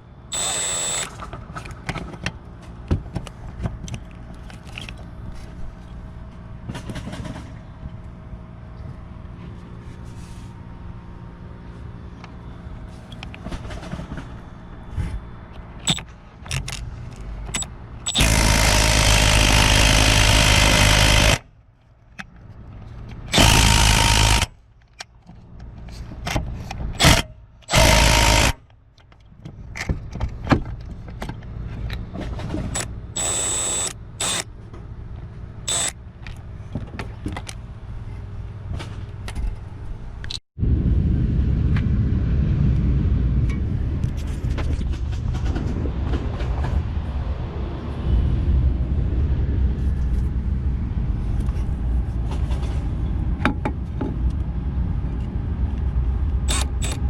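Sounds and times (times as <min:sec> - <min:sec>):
steady noise: 0:00.0 - 0:01.1, 0:15.7 - 0:21.4, 0:23.3 - 0:24.5
impact wrench hammering: 0:17.6 - 0:21.4, 0:23.3 - 0:24.5, 0:27.0 - 0:28.6, 0:35.7 - 0:35.9.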